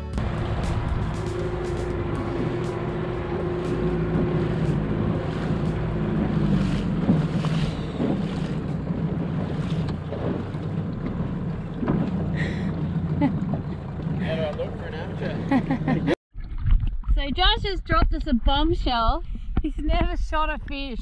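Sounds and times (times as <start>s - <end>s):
boat engine hum: 0.0s - 16.2s
water washing: 0.0s - 16.2s
wind buffeting microphone: 0.2s - 15.0s, 16.4s - 21.0s.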